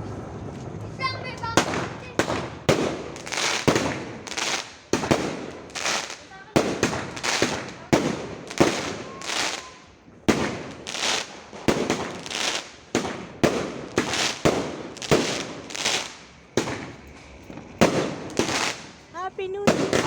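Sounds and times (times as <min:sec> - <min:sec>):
fireworks bangs and hissing: 0:00.0 - 0:20.0.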